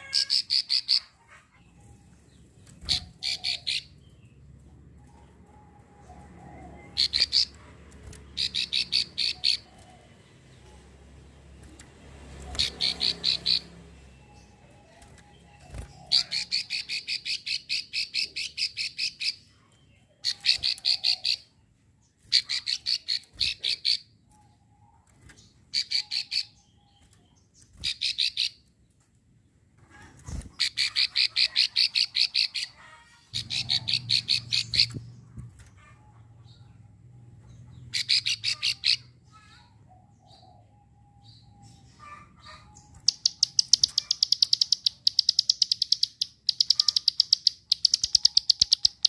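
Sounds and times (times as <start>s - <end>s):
bird clicking call: 43.0s - 49.0s.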